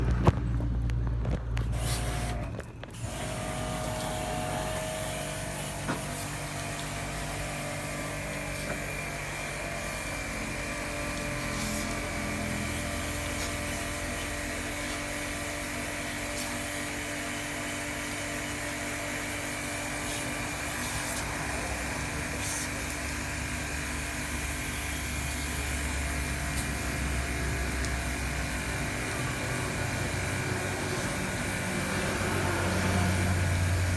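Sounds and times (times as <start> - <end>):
motor-driven machine whining: 19.6 - 33.9.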